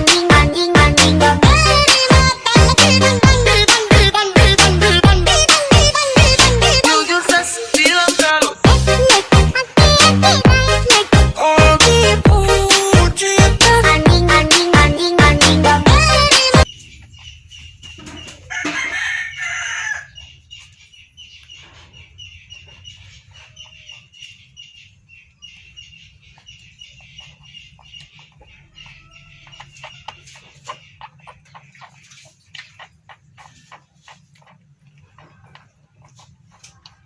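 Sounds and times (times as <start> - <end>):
rooster crowing: 18.4 - 20.2, 28.6 - 30.3.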